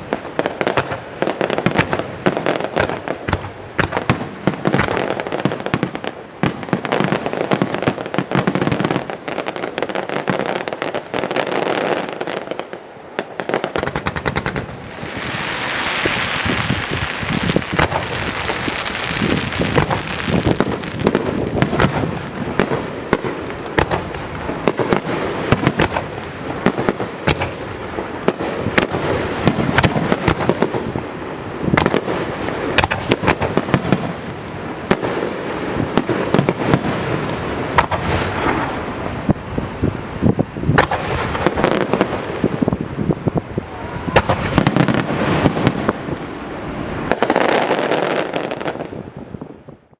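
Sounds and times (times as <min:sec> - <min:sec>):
fireworks bursting with dense bangs: 0:00.0 - 0:49.9
hissing crackle of fireworks: 0:00.0 - 0:49.9.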